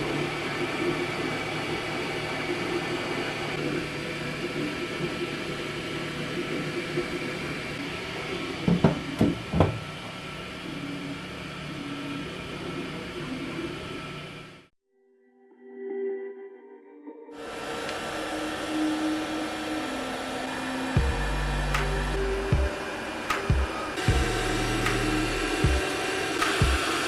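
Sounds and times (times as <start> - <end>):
stepper motors whirring: 0.0 - 14.6, 17.6 - 27.0
printer fans humming: 0.0 - 14.7, 17.4 - 27.0.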